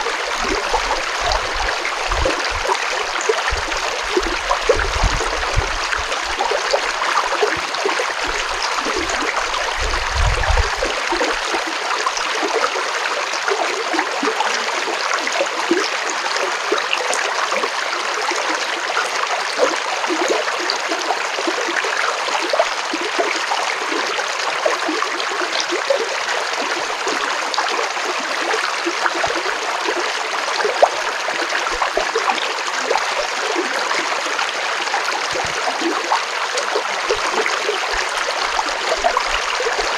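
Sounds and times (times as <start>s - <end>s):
stream rushing and splashing: 0.0s - 39.9s.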